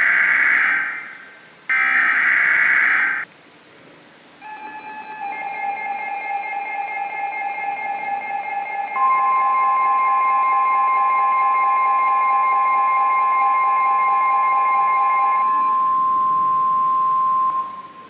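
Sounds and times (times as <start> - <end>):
loud single-pitch alarm tone: 0.0 - 3.2, 4.4 - 18.0
steady electronic tones: 7.1 - 18.0.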